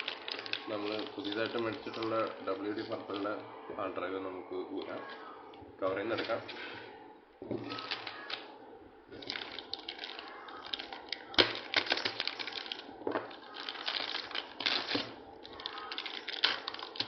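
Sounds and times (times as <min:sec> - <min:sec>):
plastic packaging crinkling: 0:00.0 - 0:03.4, 0:07.5 - 0:17.0.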